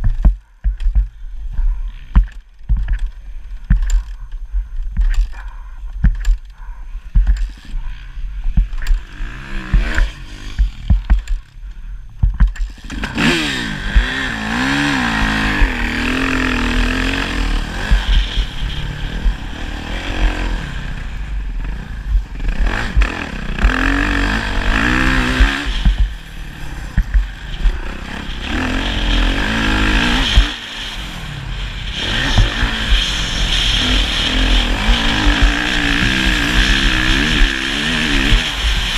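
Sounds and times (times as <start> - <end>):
low rumble: 0.0 - 38.9
motocross motorcycle engine revving: 7.1 - 11.6, 12.4 - 38.9
sharp knocks: 9.7 - 11.4.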